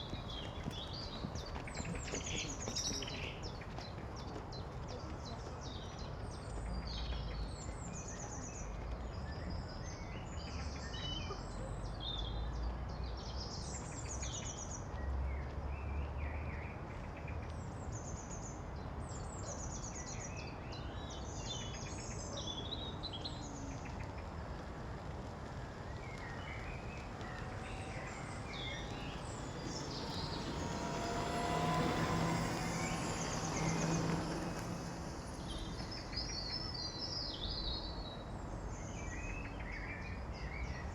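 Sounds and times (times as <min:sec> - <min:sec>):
small birds chirping: 0:00.0 - 0:14.9, 0:18.0 - 0:40.9
engine passing: 0:21.0 - 0:38.9.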